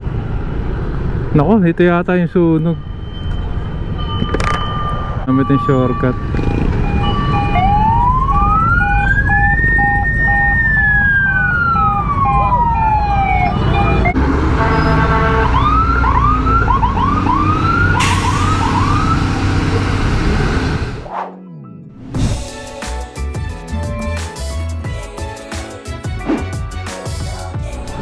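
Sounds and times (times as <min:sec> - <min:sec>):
low traffic rumble: 0:00.0 - 0:21.1
emergency vehicle siren: 0:02.4 - 0:21.1
hiss: 0:18.0 - 0:19.0.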